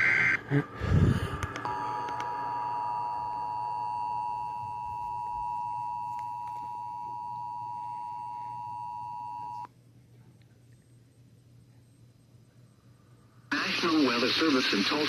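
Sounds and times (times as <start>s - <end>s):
two-tone alarm: 1.6s - 9.7s.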